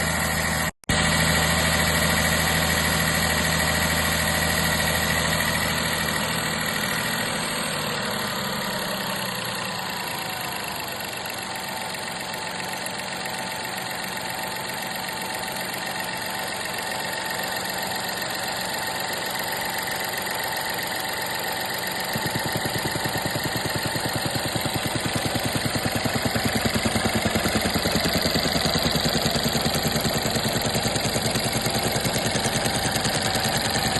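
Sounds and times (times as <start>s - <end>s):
car engine idling: 0.0s - 33.9s
fast regular pulsing: 22.0s - 33.9s.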